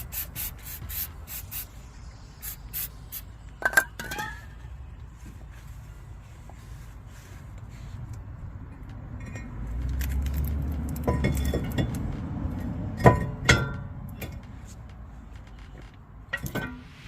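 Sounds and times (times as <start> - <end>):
metal tools clinking: 9.2 - 12.0.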